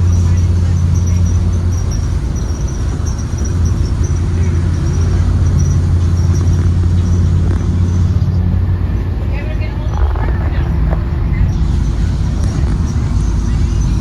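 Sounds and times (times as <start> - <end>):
bus engine drone: 0.0 - 14.0
faint high rattle: 9.6 - 13.9.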